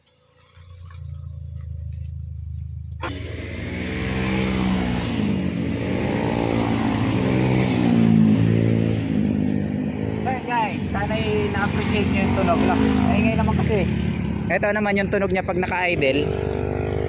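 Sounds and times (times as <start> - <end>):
car driving by accelerating: 3.0 - 14.8.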